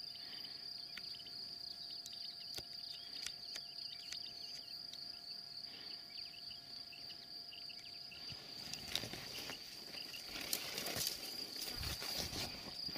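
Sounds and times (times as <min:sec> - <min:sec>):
faint chirps: 0:00.0 - 0:12.9
high-pitched insect trill: 0:00.0 - 0:12.9
rustling: 0:08.5 - 0:12.9.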